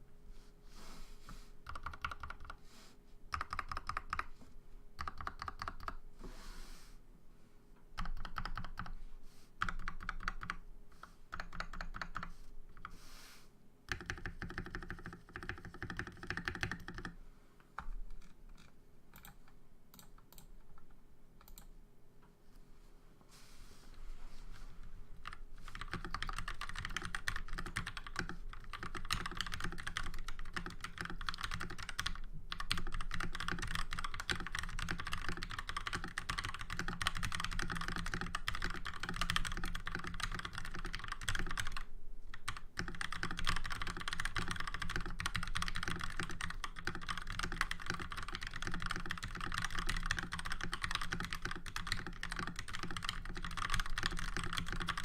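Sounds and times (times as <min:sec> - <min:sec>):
fast typing on mechanical keyboard: 0:01.6 - 0:02.6, 0:03.3 - 0:04.4, 0:05.0 - 0:06.0, 0:08.0 - 0:09.0, 0:09.6 - 0:10.6, 0:11.3 - 0:12.9, 0:13.9 - 0:17.2, 0:25.2 - 0:55.0.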